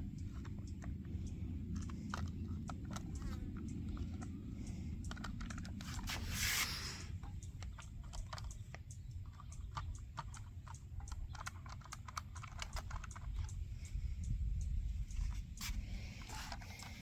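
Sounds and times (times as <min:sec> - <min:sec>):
steady low rumble: 0:00.0 - 0:11.2, 0:12.3 - 0:17.0
small clicks and taps: 0:00.0 - 0:17.0
short rustle: 0:05.8 - 0:07.1.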